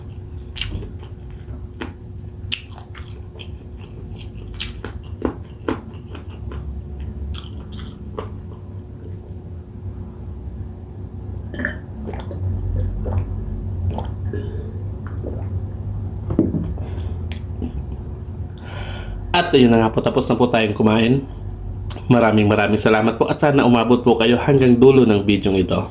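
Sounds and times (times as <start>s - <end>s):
person chewing food: 0.0s - 9.4s, 11.6s - 15.6s
low steady hum: 0.0s - 25.9s
lip smacks: 0.5s - 6.7s, 7.3s - 9.2s, 17.3s - 18.0s.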